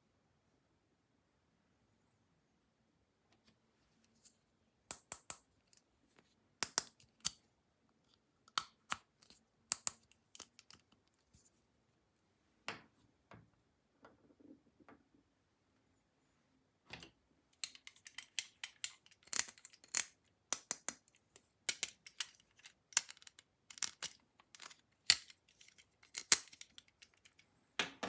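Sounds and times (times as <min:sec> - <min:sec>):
plastic clicks and snaps: 0:04.9 - 0:05.8, 0:06.6 - 0:07.4, 0:08.5 - 0:11.1, 0:17.0 - 0:21.1.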